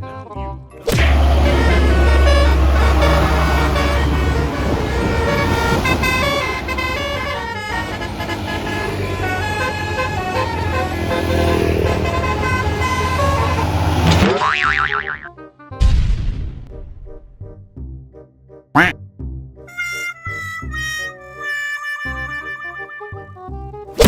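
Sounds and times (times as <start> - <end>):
multi-tone bus horn tune: 0.9 - 14.2, 19.7 - 23.6
engine humming: 0.9 - 15.3.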